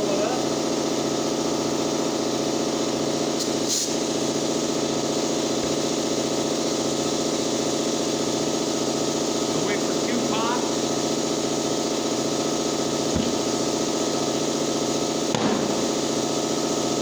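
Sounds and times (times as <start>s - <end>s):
short high hiss: 3.3s - 4.2s, 15.2s - 16.9s
machine motor droning: 4.0s - 17.0s.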